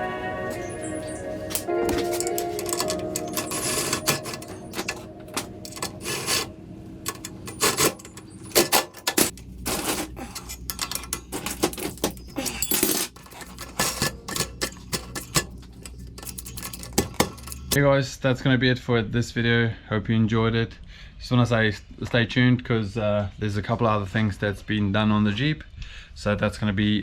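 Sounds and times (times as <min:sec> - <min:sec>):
low steady hum: 0:00.0 - 0:17.8
metal tools clinking: 0:00.8 - 0:17.8.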